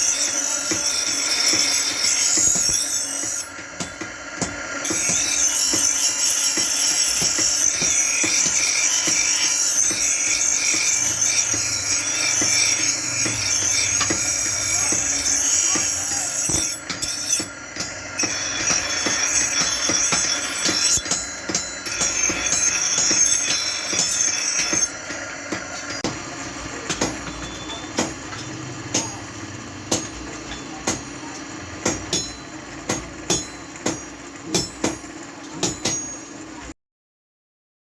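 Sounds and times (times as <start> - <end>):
high ringing tone: 0.0 - 3.5, 4.8 - 25.0, 27.2 - 29.3
hammer striking metal: 0.0 - 26.2, 26.8 - 36.4.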